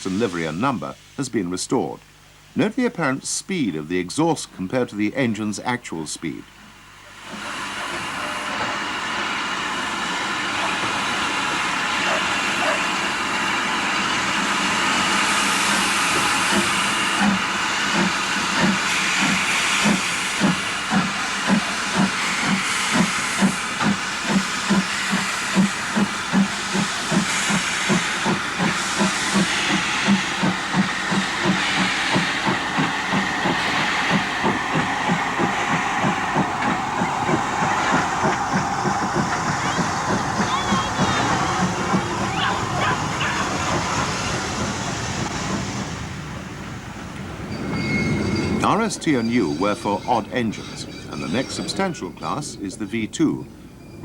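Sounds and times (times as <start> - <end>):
steam hissing: 0.0 - 1.9, 2.6 - 53.8
steam locomotive exhaust beats: 0.0 - 54.0.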